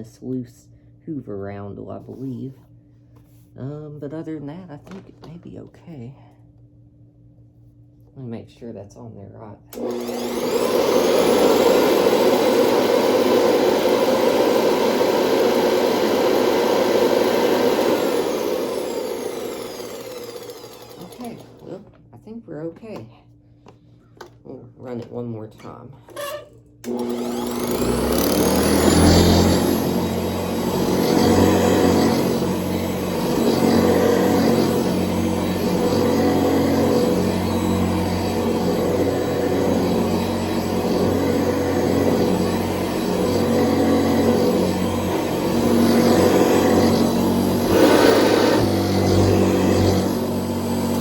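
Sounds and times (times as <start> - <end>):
vacuum cleaner running: 9.7 - 21.9, 26.8 - 51.0.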